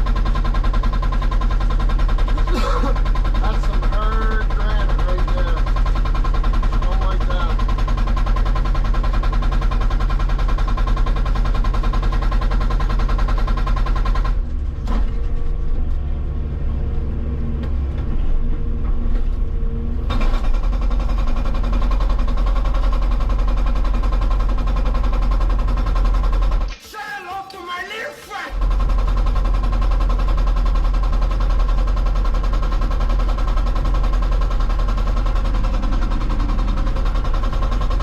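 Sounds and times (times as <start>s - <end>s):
hydraulic breaker pounding rock: 0.0s - 15.3s, 20.0s - 38.0s
excavator running low: 14.4s - 26.7s, 28.6s - 38.0s.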